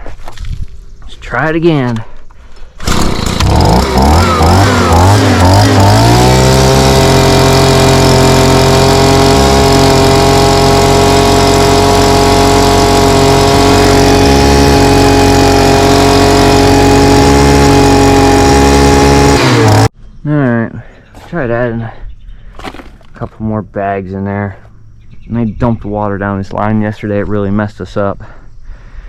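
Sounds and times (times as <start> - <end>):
motor-driven machine running: 2.8 - 19.9.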